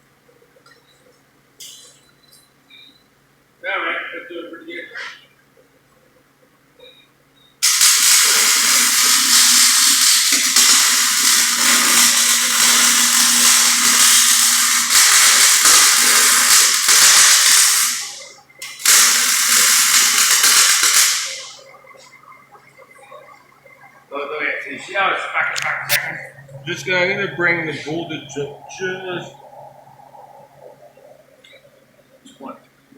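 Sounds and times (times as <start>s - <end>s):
welder arc crackling and hissing: 7.6s - 32.9s.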